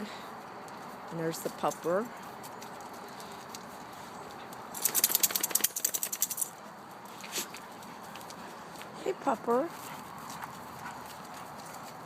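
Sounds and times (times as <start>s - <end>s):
dog tags jingling and paws clicking: 0.6s - 8.4s.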